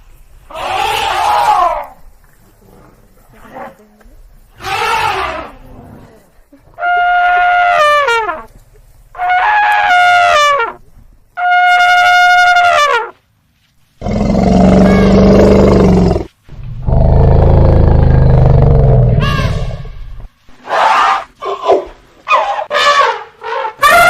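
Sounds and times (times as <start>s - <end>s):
elephant trumpeting: 4.6s - 5.6s, 9.2s - 10.8s, 14.0s - 16.3s, 16.9s - 24.0s
deep growling calls with low rumble: 14.0s - 20.3s.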